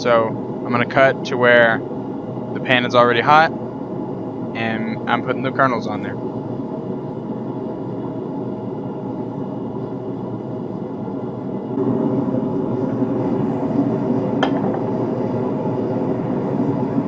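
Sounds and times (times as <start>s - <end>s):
forge roaring: 11.7s - 17.0s.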